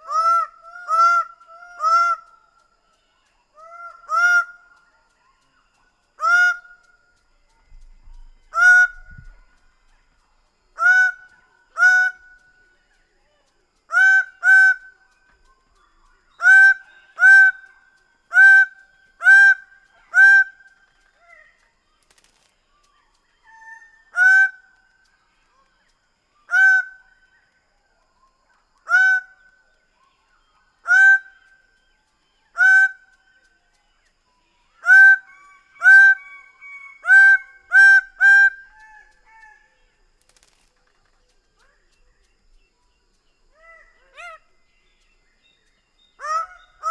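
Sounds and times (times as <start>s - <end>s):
bird calling: 13.8s - 24.8s, 34.7s - 46.9s.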